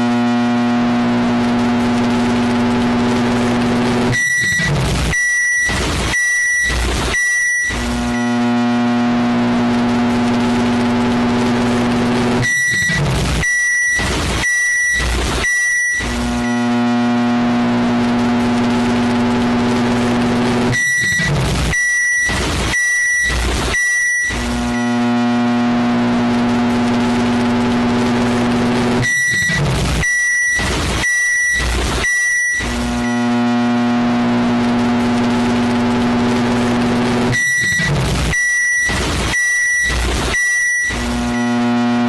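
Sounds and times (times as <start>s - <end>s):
microwave oven humming: 0.5s - 4.1s
microwave high beeps: 3.3s - 8.5s, 10.2s - 16.7s, 18.7s - 25.1s, 26.5s - 33.4s, 34.8s - 42.0s.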